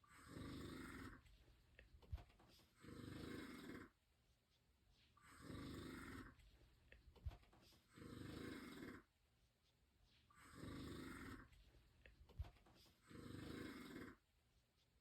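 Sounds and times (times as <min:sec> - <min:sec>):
person snoring: 0:00.1 - 0:01.2, 0:02.8 - 0:03.9, 0:05.2 - 0:06.4, 0:07.9 - 0:09.1, 0:10.4 - 0:11.5, 0:13.0 - 0:14.2.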